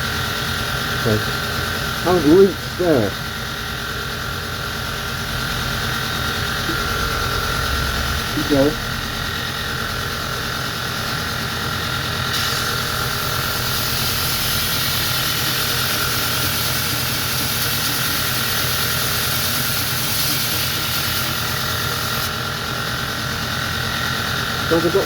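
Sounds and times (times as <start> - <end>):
belt grinder running: 0.0 - 25.0
blade grinding hiss: 12.3 - 22.3.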